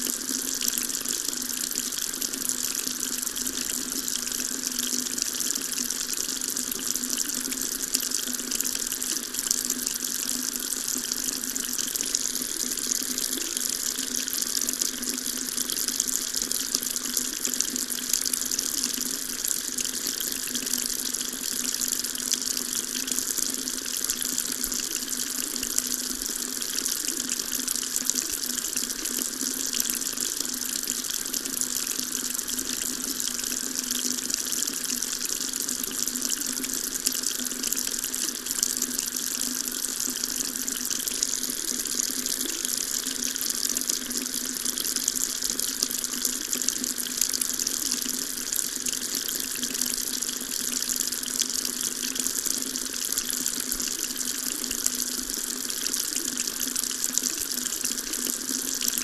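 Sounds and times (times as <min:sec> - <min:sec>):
water tap running: 0:00.0 - 0:59.0.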